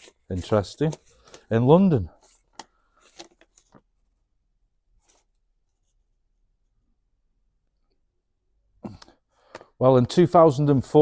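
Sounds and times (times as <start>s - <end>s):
paper rustling: 0.0s - 4.2s, 5.0s - 6.0s.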